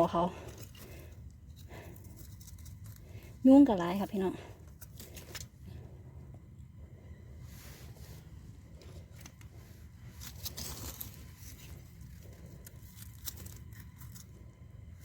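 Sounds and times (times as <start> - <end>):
steady low rumble: 0.0 - 15.0
dry rustling and crackling: 8.8 - 14.9.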